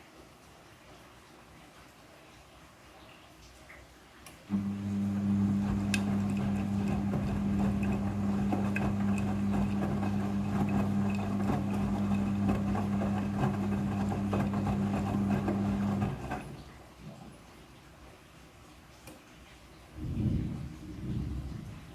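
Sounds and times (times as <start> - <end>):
rattly watery background: 0.5 - 21.9
washing machine humming: 4.5 - 18.0.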